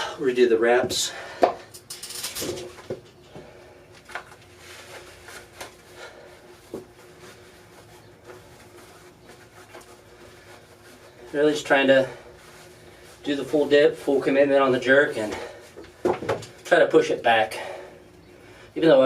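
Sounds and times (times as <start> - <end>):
fabric rubbing: 4.5 - 14.3.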